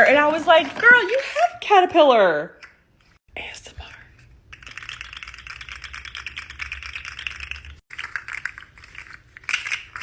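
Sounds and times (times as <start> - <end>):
fingers clicking fidget toys: 4.5 - 9.9.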